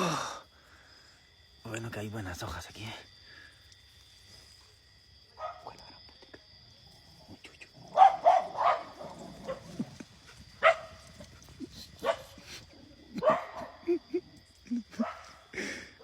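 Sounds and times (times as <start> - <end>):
dog barking: 5.4 - 5.7, 7.9 - 9.6, 10.6 - 11.0, 12.0 - 12.4, 13.2 - 13.8.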